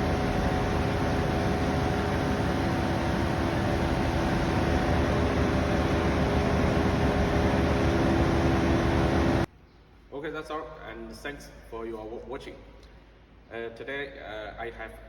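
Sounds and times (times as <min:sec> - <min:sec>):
air compressor humming: 0:00.0 - 0:09.5.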